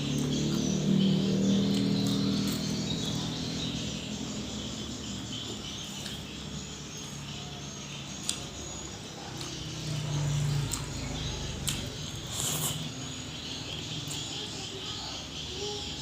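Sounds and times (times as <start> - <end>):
crickets chirping: 0.0 - 16.0
person eating quietly: 5.0 - 15.6.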